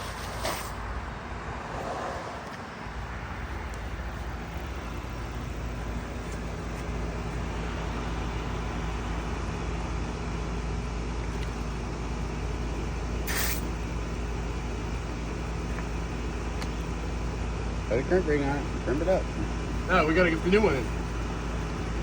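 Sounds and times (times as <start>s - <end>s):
water spraying from a pipe: 0.0s - 0.9s, 13.2s - 13.8s.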